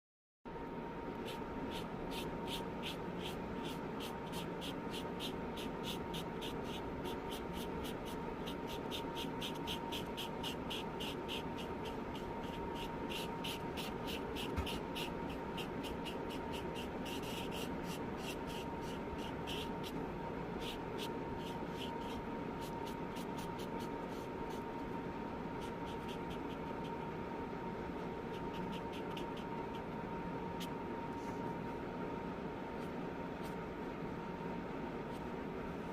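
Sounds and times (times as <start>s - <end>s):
brush pen scratching on paper: 1.2s - 20.0s, 20.6s - 24.8s, 25.6s - 27.0s, 28.0s - 29.9s.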